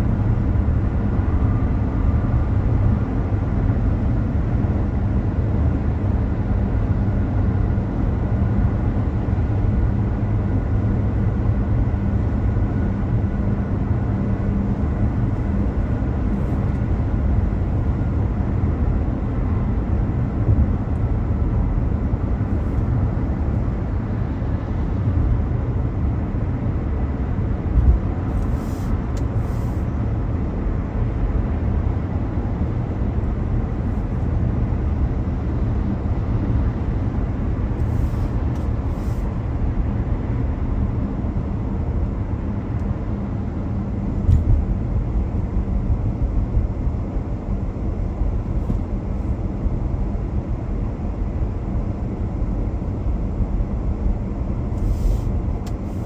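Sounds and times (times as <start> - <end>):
car engine and road noise: 0.0 - 56.0.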